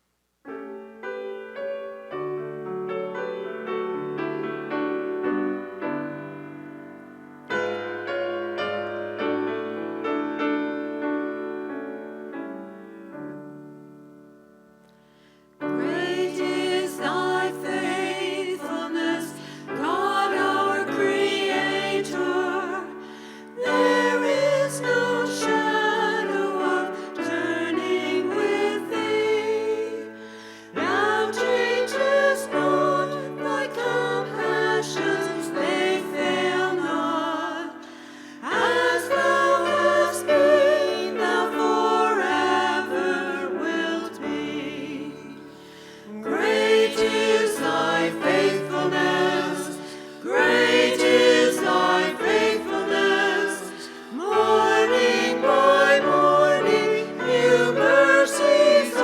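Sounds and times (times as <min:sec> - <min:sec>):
choir singing a hymn: 0:15.6 - 0:59.0.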